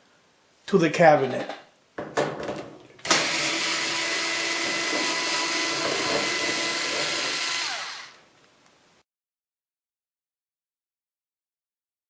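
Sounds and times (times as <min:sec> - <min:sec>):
power driver motor whir: 0:03.0 - 0:08.2.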